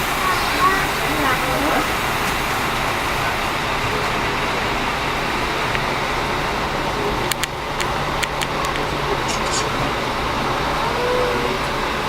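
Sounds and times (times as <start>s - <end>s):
bus engine hum with hiss: 0.0s - 12.0s
sharp clicks: 7.3s - 9.7s.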